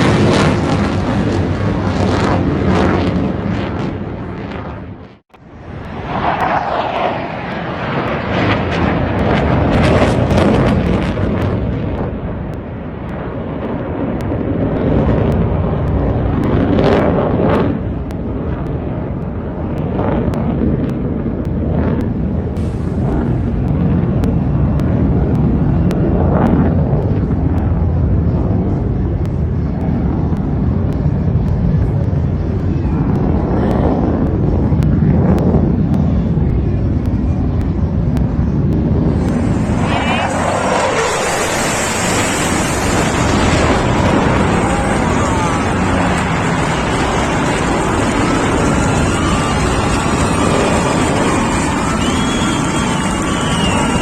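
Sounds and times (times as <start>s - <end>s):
fighter jet engines roaring: 0.0s - 54.0s.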